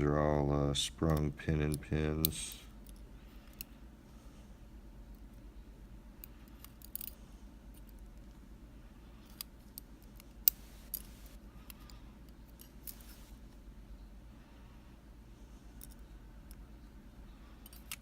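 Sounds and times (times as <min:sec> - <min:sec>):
small metallic clicks of lock parts: 0:06.2 - 0:08.3, 0:09.2 - 0:13.1, 0:15.8 - 0:16.6, 0:17.6 - 0:18.0.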